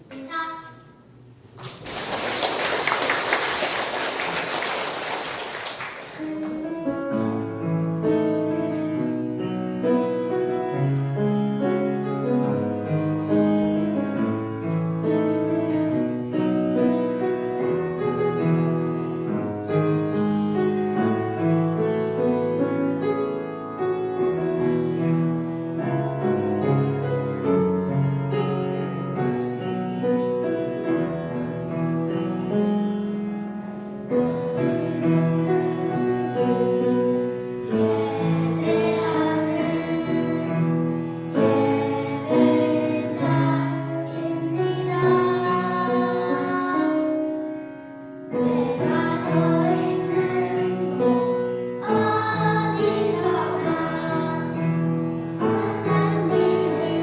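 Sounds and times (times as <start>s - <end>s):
piano playing chords: 3.4s - 57.0s.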